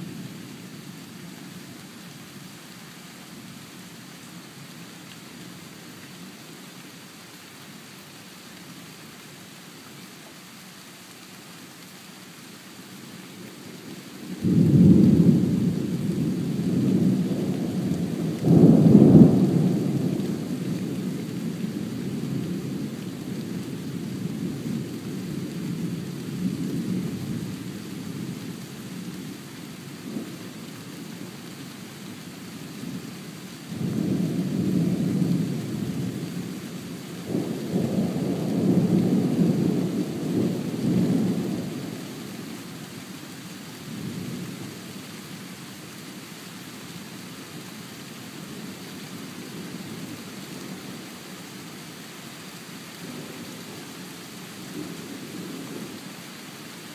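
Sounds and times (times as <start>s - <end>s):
steady rain: 0.0s - 56.9s
thunder rumbling: 14.4s - 22.8s.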